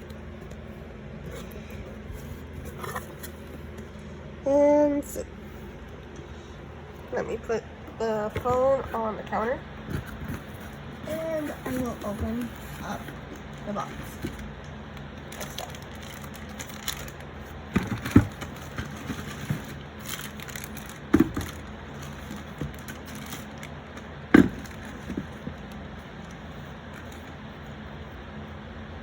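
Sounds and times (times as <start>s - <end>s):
cardboard box being opened: 9.8s - 14.5s, 15.4s - 23.8s
sharp knocks and thuds: 24.3s - 25.4s.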